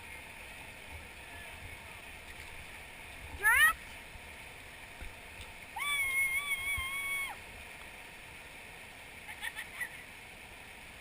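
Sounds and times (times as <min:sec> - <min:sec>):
river water rushing: 0:00.0 - 0:11.0
person whooping: 0:05.8 - 0:07.4.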